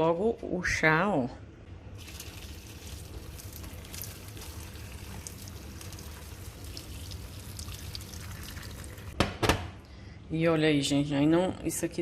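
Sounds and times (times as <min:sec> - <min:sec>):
tea pouring into a pot: 0:02.0 - 0:09.2.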